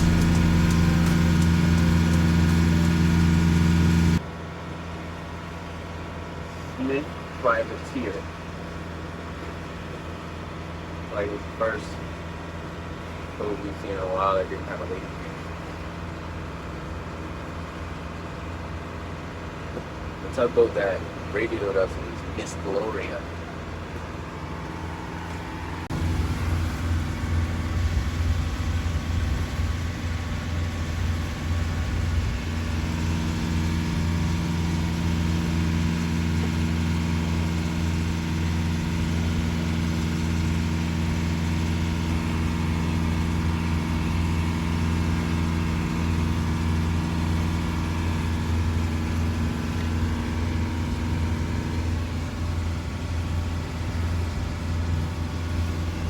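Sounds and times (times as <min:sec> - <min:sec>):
higher steady hum: 0:00.0 - 0:04.2, 0:19.7 - 0:37.0
boat engine droning: 0:00.0 - 0:56.0.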